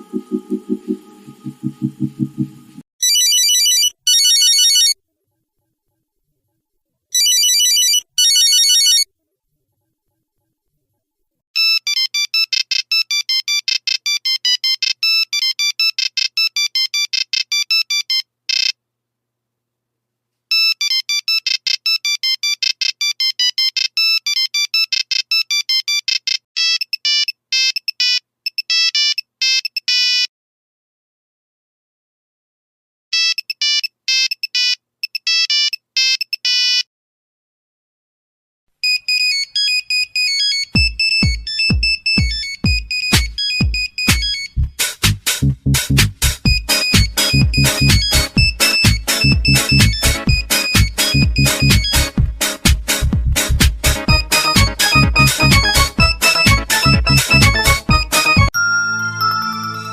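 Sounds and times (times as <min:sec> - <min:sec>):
rapid beeping ringtone melody: 0:00.1 - 0:05.0, 0:07.2 - 0:09.0, 0:38.9 - 0:45.2, 0:46.4 - 0:59.9
warbling electronic phone ring: 0:03.0 - 0:05.0, 0:07.2 - 0:09.1, 0:11.6 - 0:18.8, 0:38.8 - 0:44.6, 0:46.5 - 0:52.2, 0:54.1 - 0:59.9.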